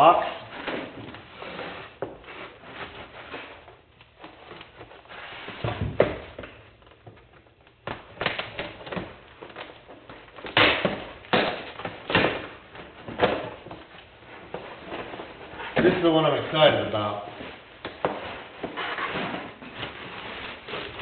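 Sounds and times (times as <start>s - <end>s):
knocks and clicks of boxes: 5.6s - 14.8s.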